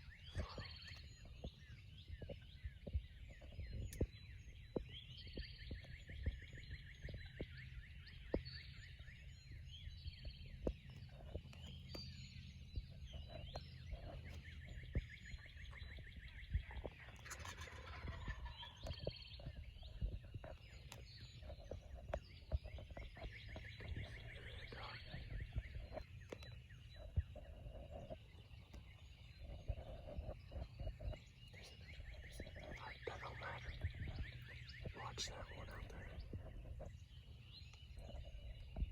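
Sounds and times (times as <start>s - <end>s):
birds calling: 0.0s - 38.9s
turkey gobbling: 16.7s - 19.5s.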